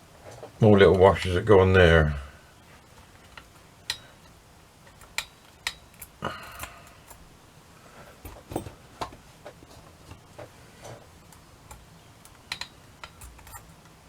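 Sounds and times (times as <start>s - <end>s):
small metal parts clicking: 11.7s - 13.9s.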